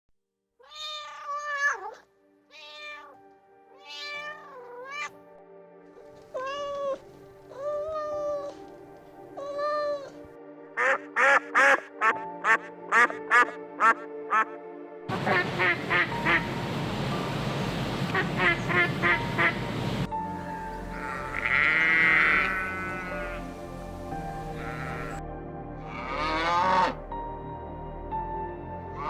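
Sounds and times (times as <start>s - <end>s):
cat meowing: 0.6s - 3.2s, 3.8s - 5.1s, 6.3s - 8.5s
background music held notes: 2.1s - 29.0s.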